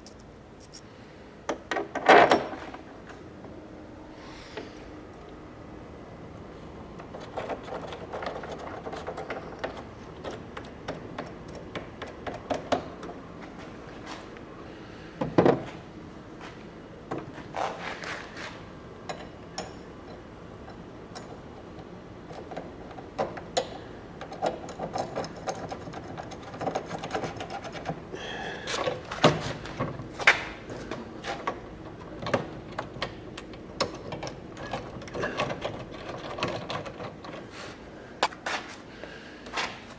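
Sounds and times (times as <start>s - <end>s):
hand tools clicking and clanking: 22.3s - 37.6s.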